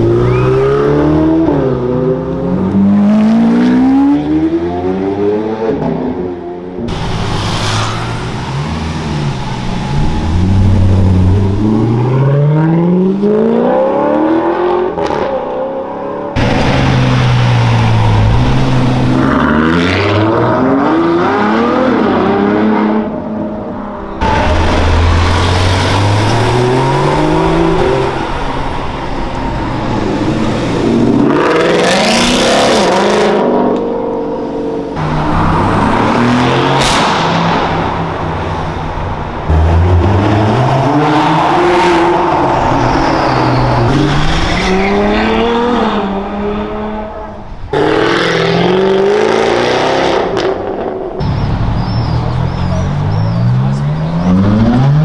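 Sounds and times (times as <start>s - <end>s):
car engines accelerating in tunnel: 0.0s - 55.0s.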